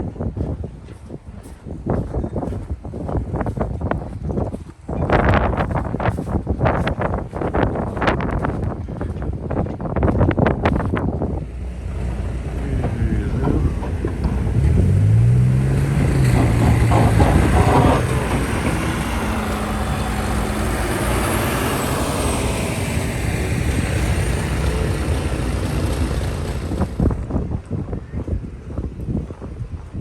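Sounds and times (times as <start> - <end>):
street and traffic noise: 0.0 - 30.0
vehicle engine revving: 11.3 - 27.3.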